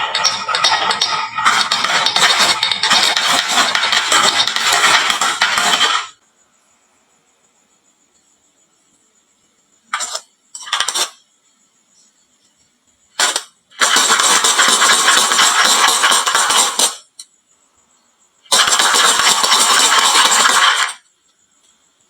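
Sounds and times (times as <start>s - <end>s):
marbles clattering down wooden run: 0.0s - 6.2s, 13.9s - 17.0s, 18.5s - 21.0s.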